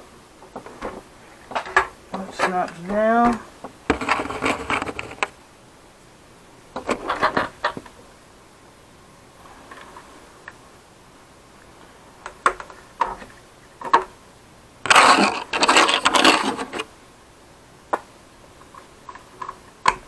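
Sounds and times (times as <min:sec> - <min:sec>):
plastic rattling: 0:00.6 - 0:05.3.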